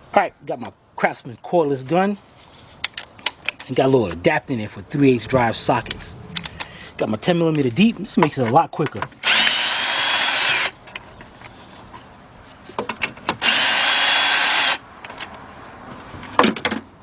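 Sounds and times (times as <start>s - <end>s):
cordless power gun spinning: 9.2s - 10.8s, 13.4s - 14.8s.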